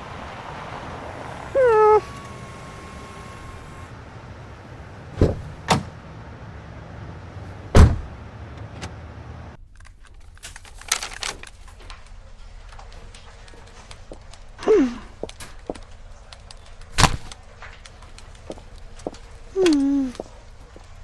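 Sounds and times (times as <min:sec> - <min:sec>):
sharp knocks: 0:05.2 - 0:05.9
light clicks and rattling: 0:09.6 - 0:21.0.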